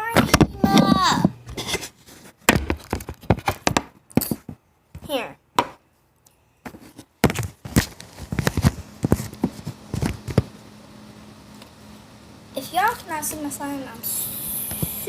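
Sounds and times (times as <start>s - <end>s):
taps and knocks of handling: 5.6s - 5.8s.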